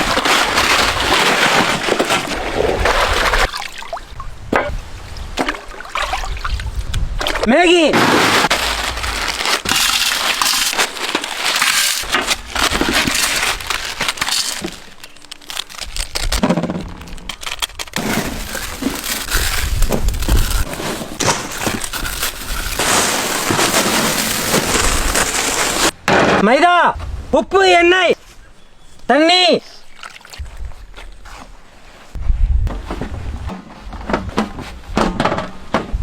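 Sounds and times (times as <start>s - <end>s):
dry noodles being crushed: 8.2s - 25.9s.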